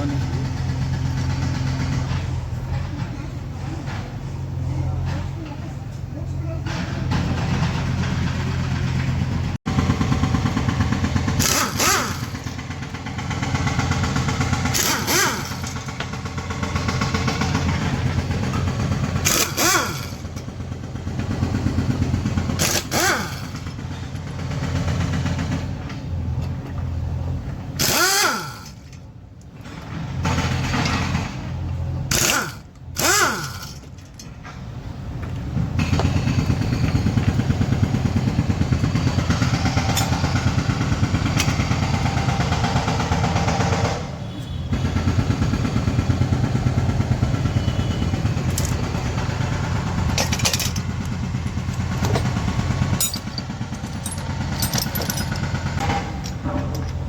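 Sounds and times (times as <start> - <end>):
engine running with rapid pulse: 6.7 - 26.0, 35.6 - 57.0.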